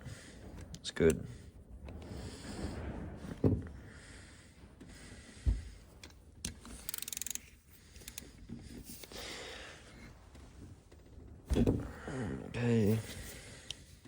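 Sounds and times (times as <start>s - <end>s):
ratchet wrench clicks: 6.7s - 8.2s.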